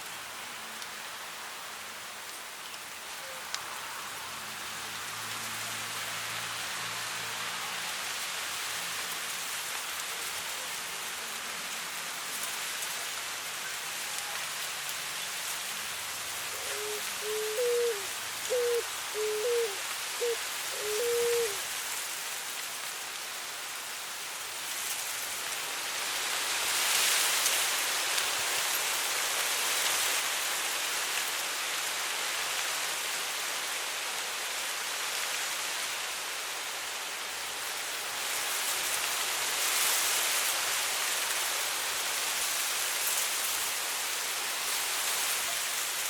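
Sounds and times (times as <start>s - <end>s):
wind rustling dry grass: 0.0s - 46.0s
dove hooting coos: 16.5s - 21.6s.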